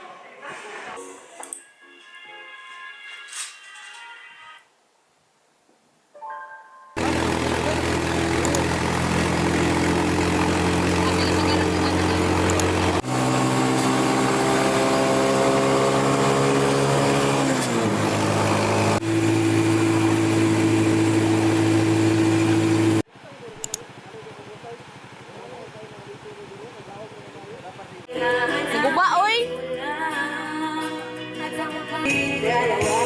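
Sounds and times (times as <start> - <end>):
vehicle engine running: 7.0 - 28.1.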